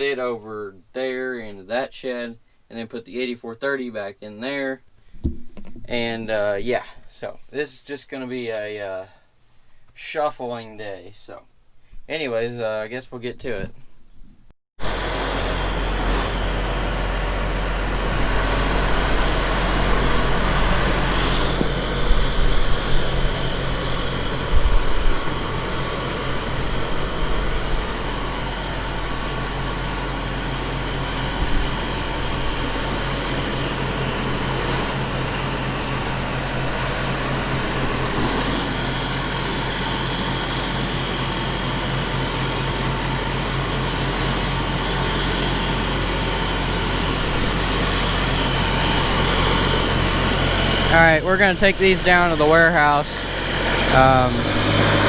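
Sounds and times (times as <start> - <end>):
diesel engine running: 14.8 - 55.0.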